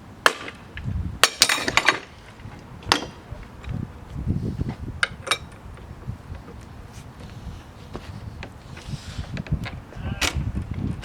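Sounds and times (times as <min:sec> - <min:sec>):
hand tools clinking on metal: 0:01.2 - 0:02.1
handling and shuffling noise: 0:01.6 - 0:10.0.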